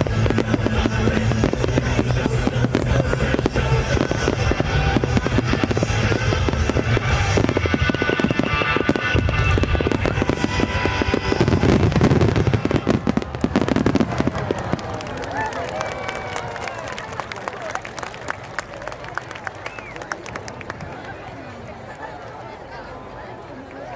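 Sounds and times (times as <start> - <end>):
music playing: 0.0 - 13.7
fireworks bangs and crackling: 0.0 - 16.4.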